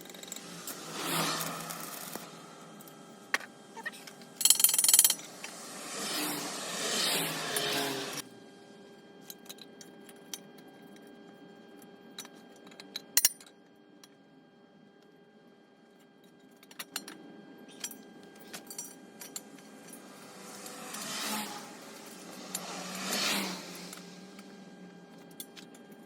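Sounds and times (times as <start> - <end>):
metallic clinks of steel parts: 3.8 - 5.3, 12.2 - 13.5, 16.6 - 20.1.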